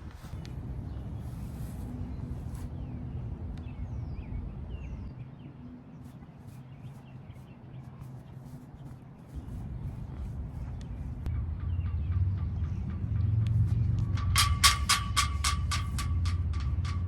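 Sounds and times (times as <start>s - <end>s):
faint hum: 0.0s - 17.0s
low rumble: 9.3s - 17.0s.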